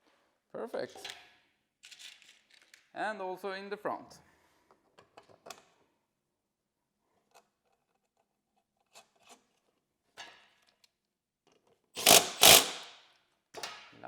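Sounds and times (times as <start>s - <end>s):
screw and nut clicking: 12.0s - 12.9s.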